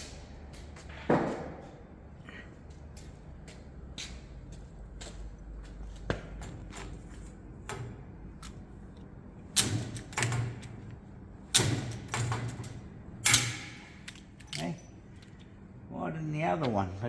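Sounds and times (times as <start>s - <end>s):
rivet gun metallic clacks: 13.2s - 14.9s.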